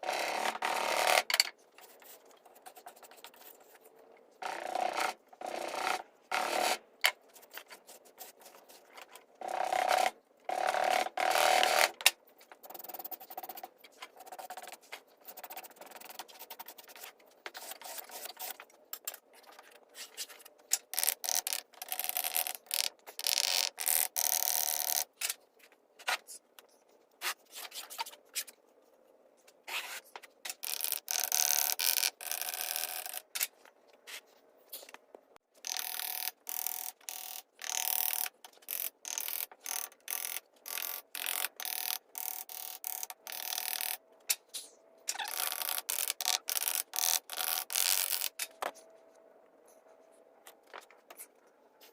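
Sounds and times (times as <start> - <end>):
scraping and rubbing strokes: 7.2 - 9.2, 12.4 - 23.2.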